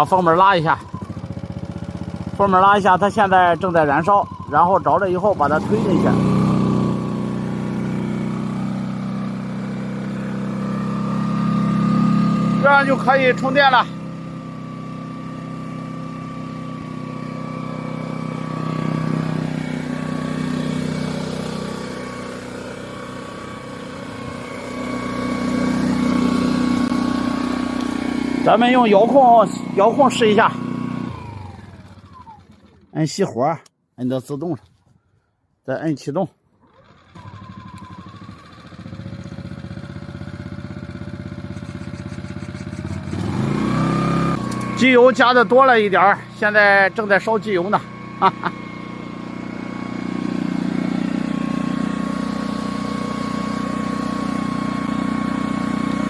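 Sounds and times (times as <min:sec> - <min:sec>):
petrol generator running: 0:00.0 - 0:33.2, 0:36.6 - 0:56.0.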